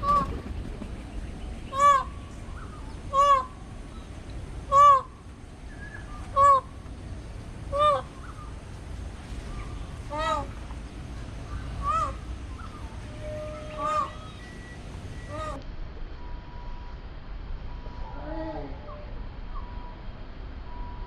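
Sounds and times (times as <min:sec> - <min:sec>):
bird calling loudly: 0:01.1 - 0:06.8, 0:11.2 - 0:15.6.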